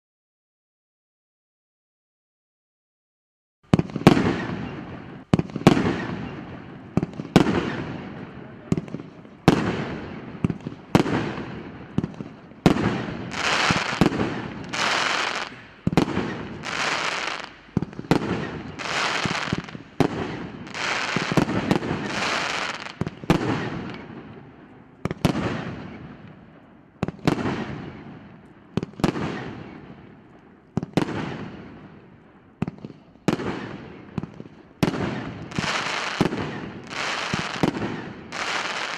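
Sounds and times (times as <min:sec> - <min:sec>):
firework bangs: 0:03.7 - 0:24.4, 0:27.0 - 0:28.2, 0:32.6 - 0:38.9
firework crackling: 0:03.8 - 0:24.1, 0:34.8 - 0:38.9.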